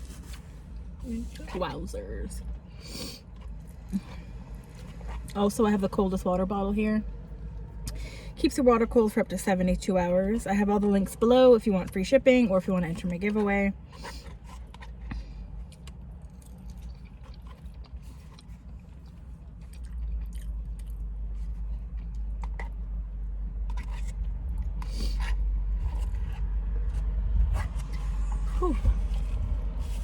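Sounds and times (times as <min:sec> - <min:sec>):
steady low rumble: 0:00.0 - 0:30.0
chewing food: 0:02.4 - 0:05.4, 0:12.7 - 0:30.0
fork scraping takeout container: 0:23.7 - 0:24.2, 0:24.8 - 0:30.0.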